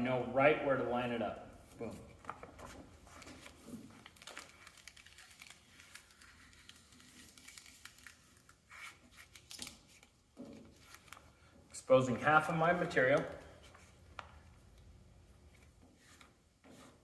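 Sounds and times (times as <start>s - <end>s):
paper rustling and crinkling: 1.7s - 11.5s, 15.4s - 17.0s.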